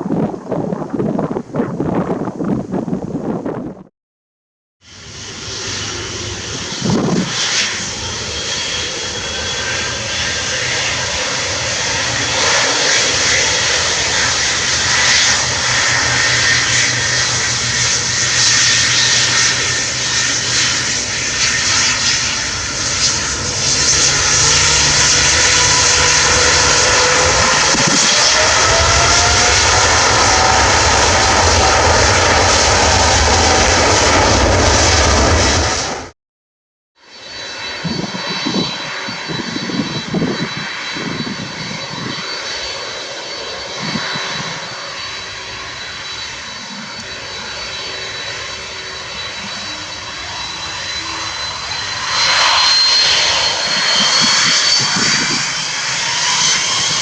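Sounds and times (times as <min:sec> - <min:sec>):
jet engines roaring: 0:04.9 - 0:36.1, 0:37.1 - 0:57.0
rising engine whine: 0:04.9 - 0:36.1, 0:37.2 - 0:57.0
deep engine rumble: 0:05.1 - 0:10.2.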